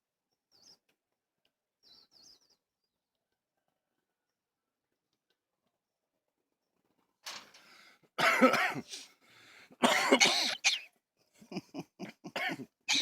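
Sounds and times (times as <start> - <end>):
cockatoo mimicking a cough: 8.2 - 9.1, 9.8 - 10.9, 12.0 - 13.0.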